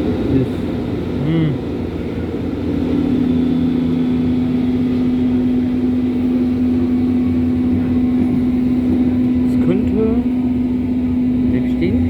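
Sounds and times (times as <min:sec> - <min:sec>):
train motor hum: 0:00.0 - 0:12.0
train wheels rumbling: 0:00.0 - 0:12.0.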